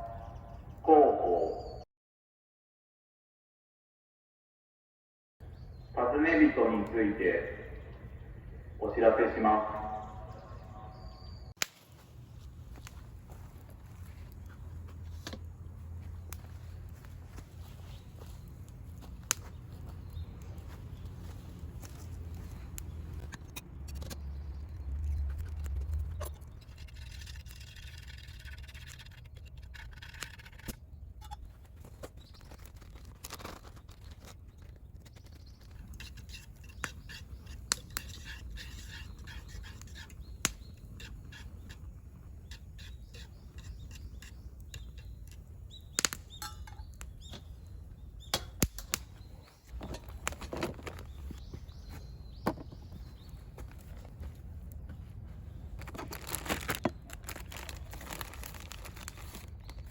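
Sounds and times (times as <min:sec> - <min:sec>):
faint bird chirps: 0:00.0 - 0:01.9, 0:09.8 - 0:11.6.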